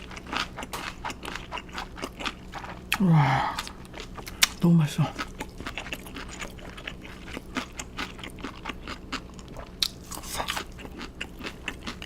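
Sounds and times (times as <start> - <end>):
chewing crispy fried chicken: 0.0 - 12.0.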